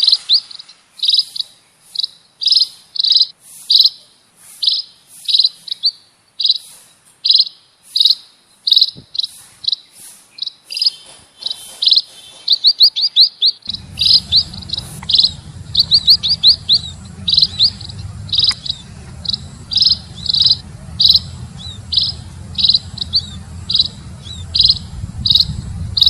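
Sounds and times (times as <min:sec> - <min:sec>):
small bird chirping: 0:00.0 - 0:26.0.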